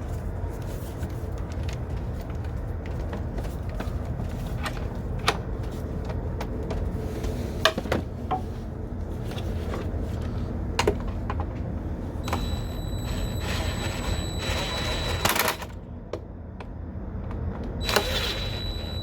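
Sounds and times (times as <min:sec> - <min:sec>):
faint high whine: 0:12.2 - 0:15.6, 0:17.8 - 0:19.0.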